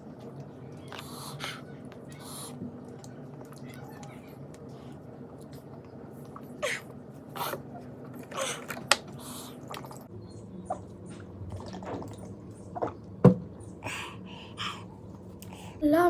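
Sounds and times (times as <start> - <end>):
hissing breaths and sniffs: 0.8 - 10.1, 13.6 - 16.0.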